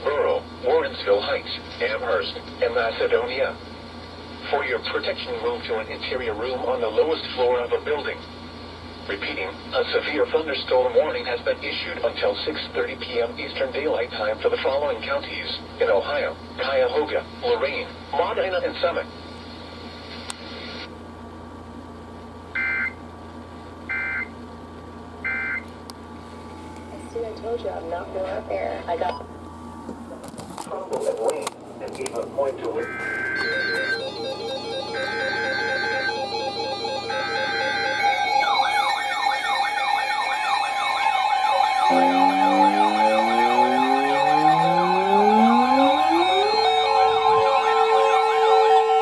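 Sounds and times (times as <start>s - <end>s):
low steady hum: 21.0s - 39.7s, 40.4s - 49.0s
two-tone warbling data bursts: 32.8s - 48.5s
lower siren winding up: 32.8s - 49.0s
wailing siren fast sweeps: 32.9s - 49.0s.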